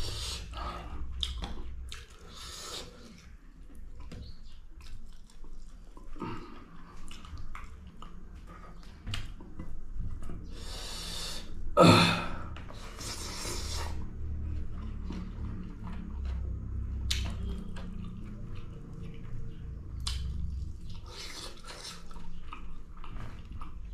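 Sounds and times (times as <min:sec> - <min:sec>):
loud breathy sniffs: 0:00.0 - 0:00.9, 0:02.2 - 0:03.2, 0:10.5 - 0:11.6, 0:12.8 - 0:14.1
person chewing: 0:00.0 - 0:11.7, 0:12.8 - 0:23.9.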